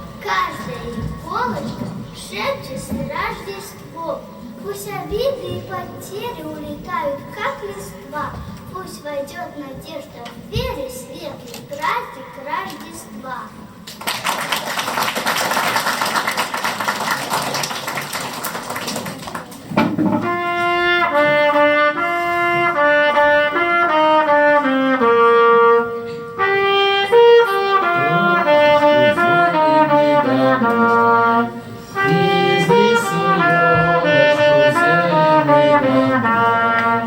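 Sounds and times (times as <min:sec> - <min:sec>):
people clapping: 0:13.8 - 0:20.0
solo wind instrument melody: 0:20.2 - 0:37.0.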